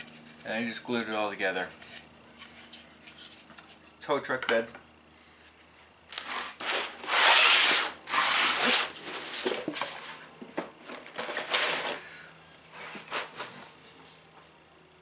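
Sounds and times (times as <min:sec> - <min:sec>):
plastic parts rustling and scraping: 0:08.1 - 0:14.6.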